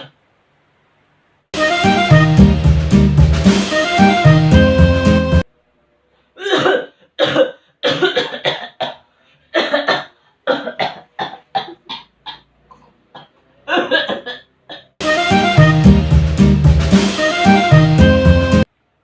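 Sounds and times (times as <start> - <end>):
person coughing: 6.4 - 15.0.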